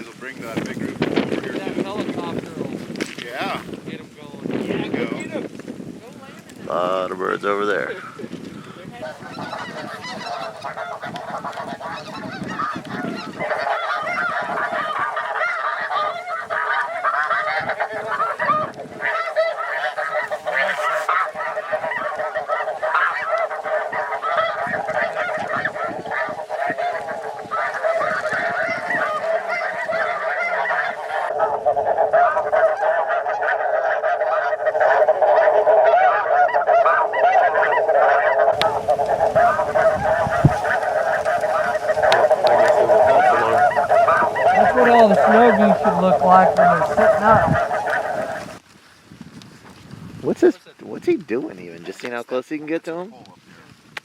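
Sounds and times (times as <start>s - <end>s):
geese honking: 6.7s - 48.6s.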